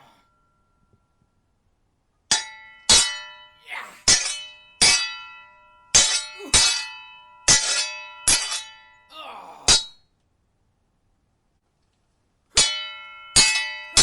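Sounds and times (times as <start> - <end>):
sword blades clashing: 2.9 - 5.2, 6.0 - 6.9, 13.4 - 14.0.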